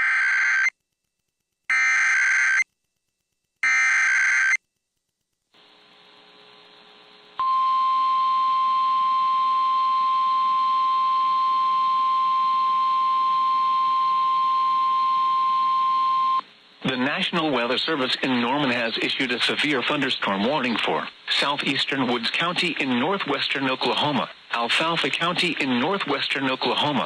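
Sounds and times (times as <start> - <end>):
faint radio hiss: 5.5 - 7.4, 15.9 - 27.0.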